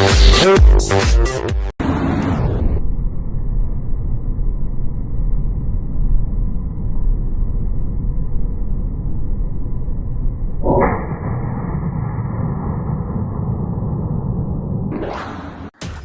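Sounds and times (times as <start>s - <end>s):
muffled low rumbling: 2.3s - 15.0s.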